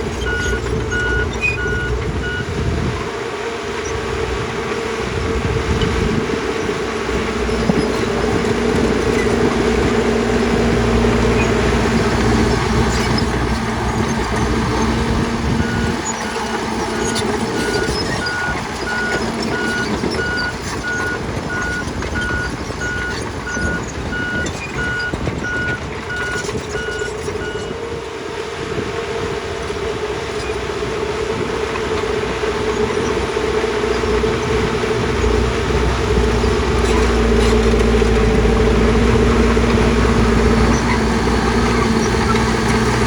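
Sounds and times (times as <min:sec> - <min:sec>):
heavy construction machinery running: 0:00.0 - 0:43.0
backup alarm beeping: 0:00.3 - 0:02.5.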